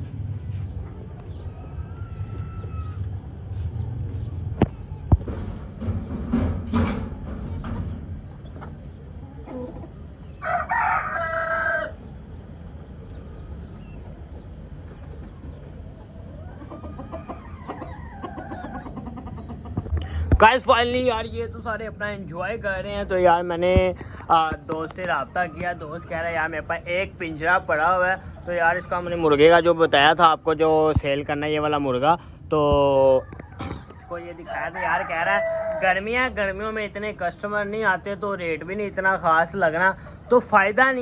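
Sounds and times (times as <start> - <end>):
chickens clucking: 0.0 - 21.8, 22.4 - 29.8, 32.8 - 38.4
sharp knocks: 4.6 - 8.8
rooster crowing: 10.4 - 12.0, 34.4 - 36.1.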